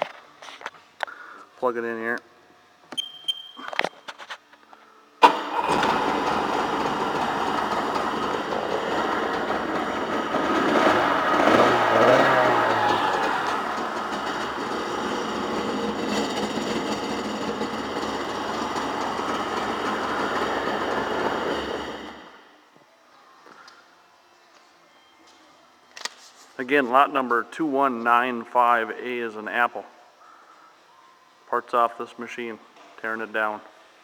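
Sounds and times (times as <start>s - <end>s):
jet ski engine running: 5.2s - 22.4s.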